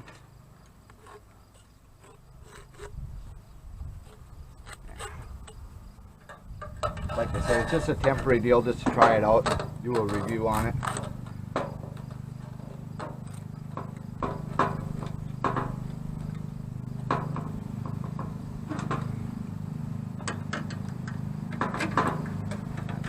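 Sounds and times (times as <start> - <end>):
steady low hum: 0.0 - 23.0
clicks and knocks of parts: 6.2 - 19.2, 20.2 - 23.0.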